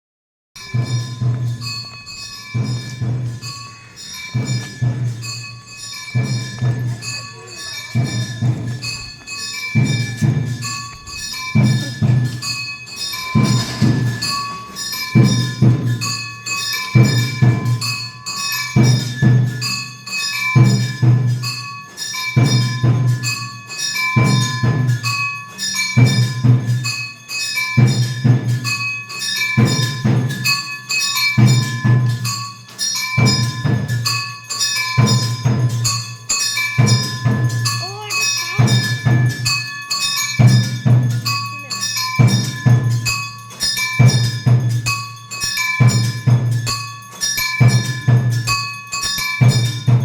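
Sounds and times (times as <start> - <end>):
low drum beat: 0.6 - 19.8, 34.9 - 50.0
bell-like ringing notes: 0.6 - 50.0.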